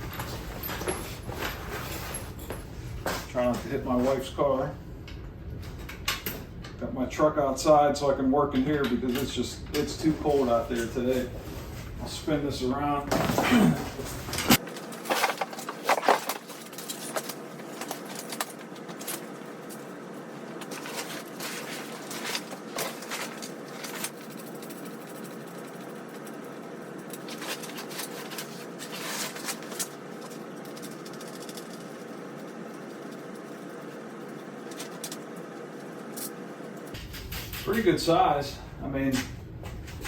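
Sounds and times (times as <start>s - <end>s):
steady background hum: 0.0s - 40.0s.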